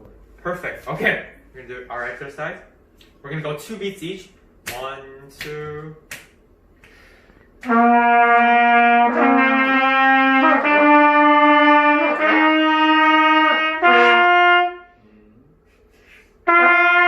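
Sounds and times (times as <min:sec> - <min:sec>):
trumpet playing held notes: 0:07.6 - 0:15.0, 0:16.4 - 0:17.0.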